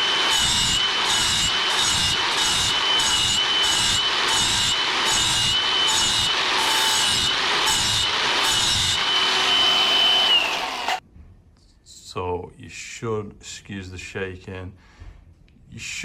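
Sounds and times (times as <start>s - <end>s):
angle grinder motor whine: 0.0s - 11.0s
grinding metal: 0.0s - 11.0s.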